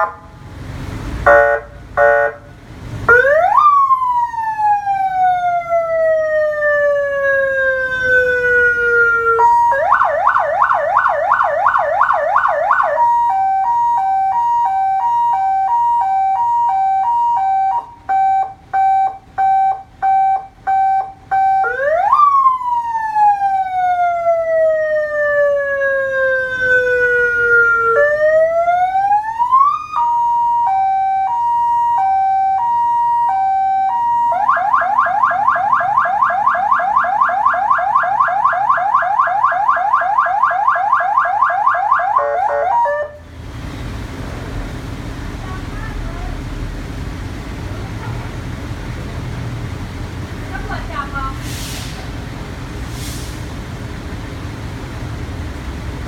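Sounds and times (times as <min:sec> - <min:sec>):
emergency vehicle siren: 0:00.0 - 0:00.6, 0:01.2 - 0:43.4.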